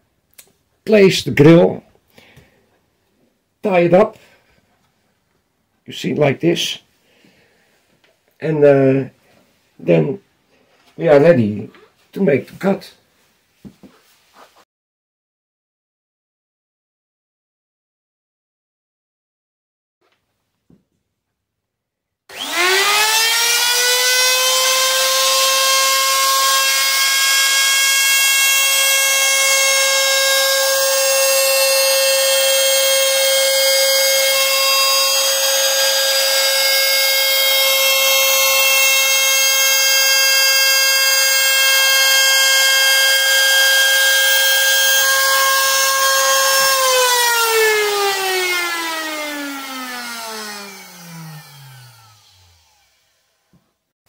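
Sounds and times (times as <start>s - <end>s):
router milling aluminium whine: 22.3s - 53.1s.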